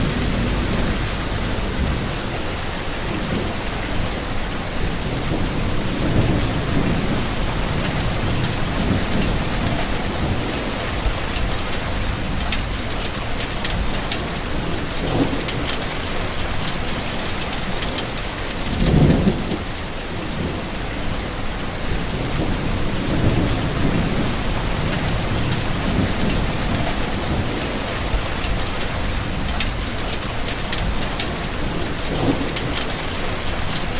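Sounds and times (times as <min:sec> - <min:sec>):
low rumbles: 0:00.0 - 0:15.6, 0:22.0 - 0:32.7
dense rainfall: 0:00.0 - 0:33.9.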